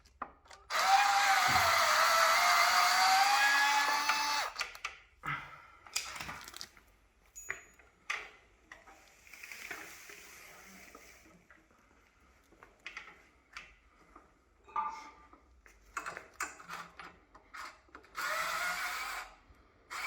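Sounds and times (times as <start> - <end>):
power screwdriver whining: 0.7 - 4.7, 18.1 - 19.3.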